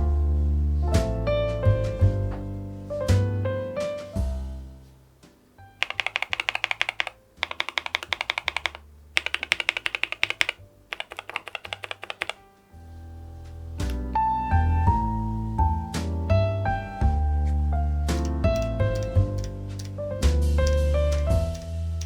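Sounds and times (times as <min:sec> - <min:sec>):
piano music: 0:00.0 - 0:22.0
fast typing on keyboard: 0:05.8 - 0:12.4, 0:18.2 - 0:20.0, 0:20.6 - 0:21.7.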